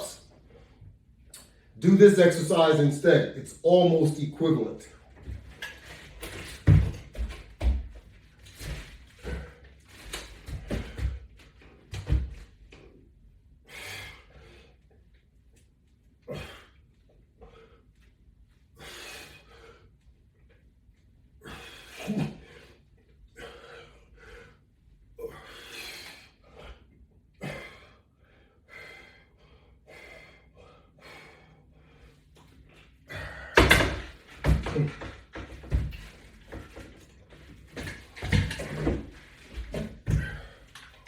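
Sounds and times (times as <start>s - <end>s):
man breathing hard: 9.1s - 9.8s, 13.6s - 14.9s, 16.2s - 17.9s, 18.7s - 20.0s, 21.4s - 32.4s, 33.0s - 33.8s, 40.0s - 41.0s.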